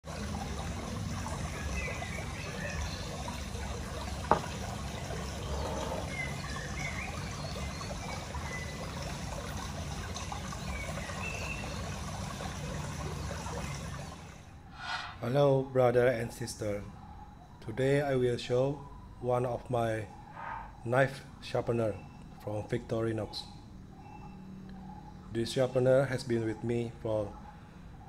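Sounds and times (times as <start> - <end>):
water trickling: 0.0 - 14.9.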